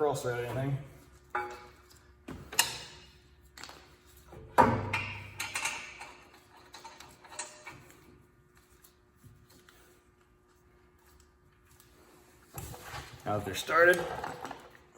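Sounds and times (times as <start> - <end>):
metal parts clinking and clanking: 4.7 - 8.0, 12.6 - 14.9.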